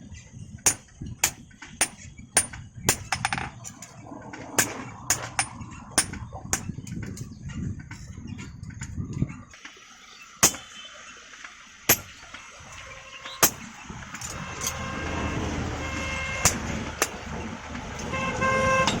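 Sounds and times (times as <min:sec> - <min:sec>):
road traffic: 0:00.0 - 0:19.0
hammer blows on metal: 0:00.7 - 0:03.4, 0:11.9 - 0:12.2, 0:13.4 - 0:15.0
vehicle horn: 0:14.3 - 0:17.0, 0:17.9 - 0:19.0.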